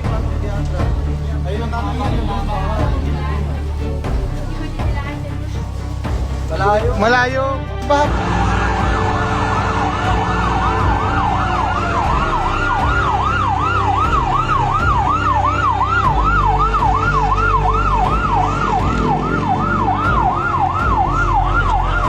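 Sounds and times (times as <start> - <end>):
steady low rumble: 0.0 - 22.0
emergency siren yelping: 8.1 - 22.0
second siren: 9.8 - 22.0.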